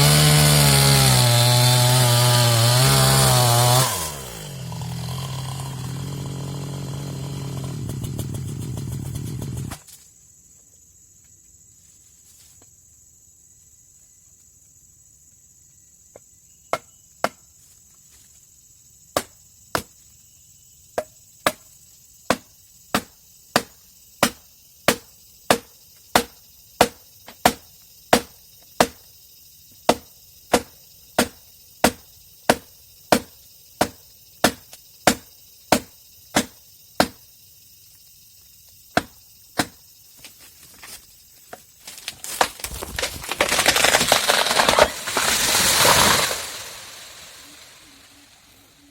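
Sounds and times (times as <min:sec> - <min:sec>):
tool striking wood: 0:22.3 - 0:29.0, 0:29.9 - 0:37.2, 0:38.9 - 0:39.8
tree crashing through branches: 0:42.0 - 0:47.8.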